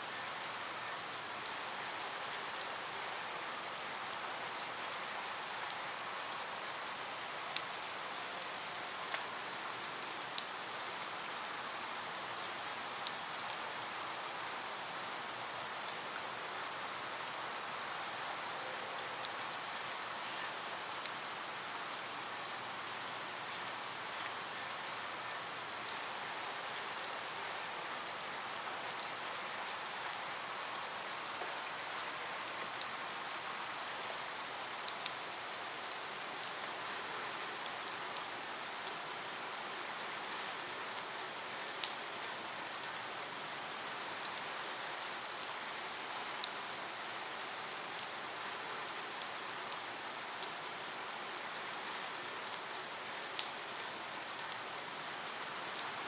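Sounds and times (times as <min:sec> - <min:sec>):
steady rain falling: 0:00.0 - 0:56.0
raindrop ticks: 0:41.8 - 0:42.4, 0:53.4 - 0:54.0.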